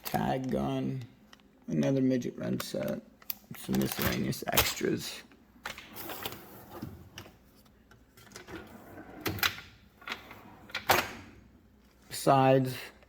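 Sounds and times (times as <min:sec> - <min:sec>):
metal drawers clacking: 0:08.1 - 0:11.4.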